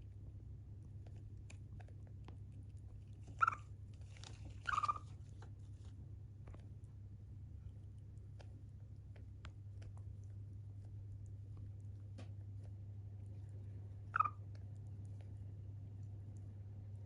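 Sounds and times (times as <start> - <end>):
chipmunk chewing clicks: 0.8 - 4.0, 4.7 - 5.0, 7.8 - 16.8
chipmunk chirping: 3.3 - 3.7, 4.7 - 5.1, 14.1 - 14.4.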